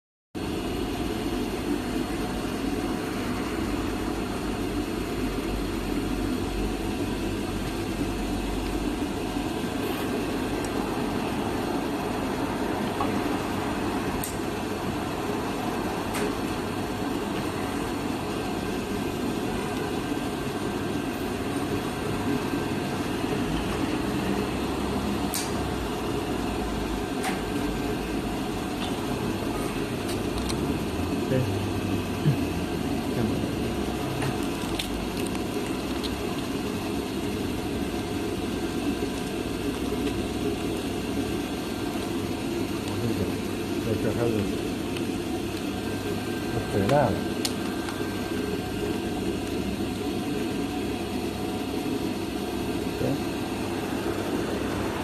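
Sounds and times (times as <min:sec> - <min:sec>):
factory machinery running: 0:19.6 - 0:40.7.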